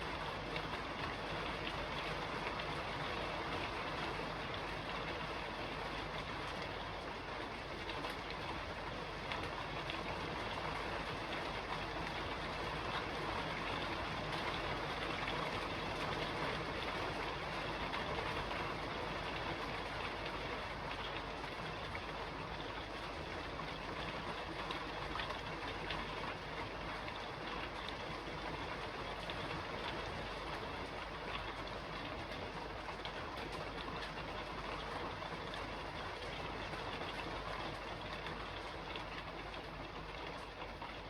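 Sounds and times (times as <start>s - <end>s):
rain falling on a roof: 0.0s - 41.0s.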